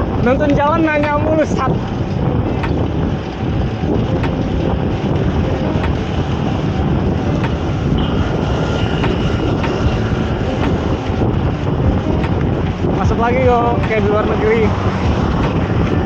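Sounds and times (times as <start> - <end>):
road and traffic noise: 0.0 - 16.0
wind on microphone: 0.0 - 16.0.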